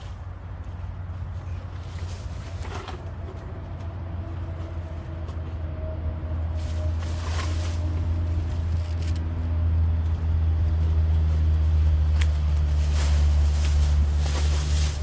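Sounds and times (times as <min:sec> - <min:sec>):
engine humming steadily: 0:00.0 - 0:15.0.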